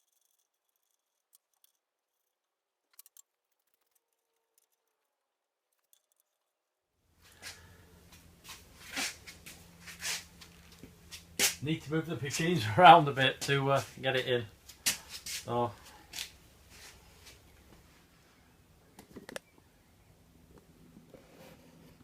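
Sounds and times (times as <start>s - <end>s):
steady low hum: 7.2s - 22.0s.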